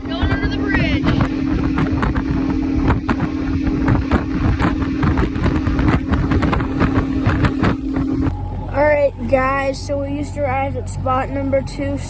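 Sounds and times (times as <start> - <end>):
outboard motor running: 0.0 - 12.0
wind buffeting microphone: 0.0 - 12.0.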